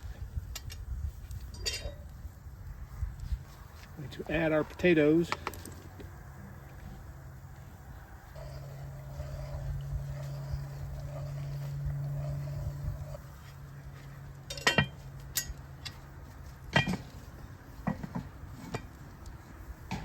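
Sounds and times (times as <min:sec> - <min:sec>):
steady low hum: 0:00.0 - 0:20.0
utensils clinking on cast iron pot: 0:01.4 - 0:02.1, 0:14.3 - 0:16.0, 0:16.7 - 0:17.2.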